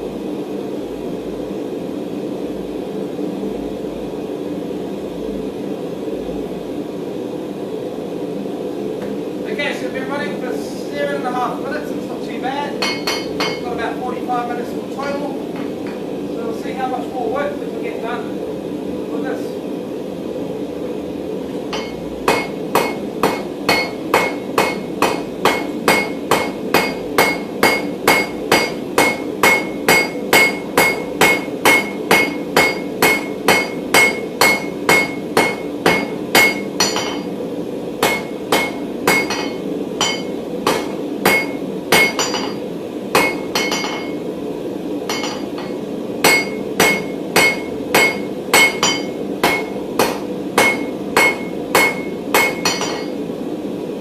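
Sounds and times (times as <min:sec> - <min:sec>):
hammer striking steel on anvil: 0:12.8 - 0:13.7, 0:21.7 - 0:37.4, 0:38.0 - 0:42.6, 0:43.2 - 0:44.2, 0:45.1 - 0:53.2.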